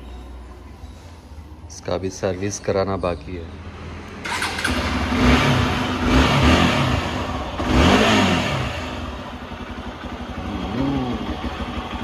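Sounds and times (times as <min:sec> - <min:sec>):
motorcycle engine revving: 0:03.6 - 0:12.0.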